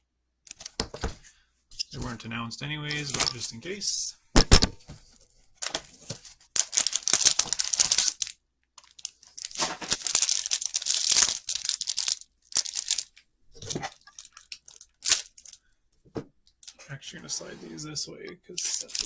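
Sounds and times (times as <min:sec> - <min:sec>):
plastic wrapping tearing and crinkling: 0:06.6 - 0:08.3, 0:08.9 - 0:13.0.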